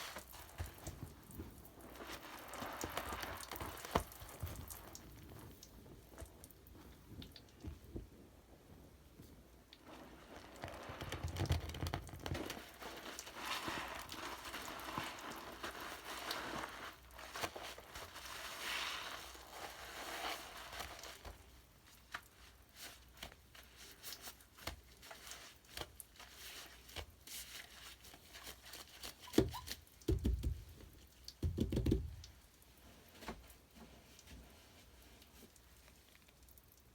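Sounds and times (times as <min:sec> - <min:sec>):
bath products crackling when crushed: 0:00.0 - 0:06.4, 0:09.7 - 0:32.4.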